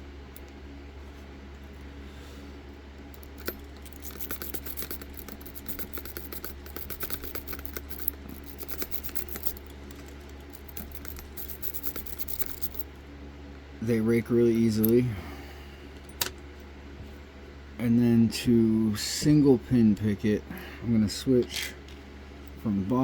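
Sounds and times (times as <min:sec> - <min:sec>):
lock pick raking pins: 0:03.0 - 0:12.9, 0:14.5 - 0:15.1, 0:16.0 - 0:16.4.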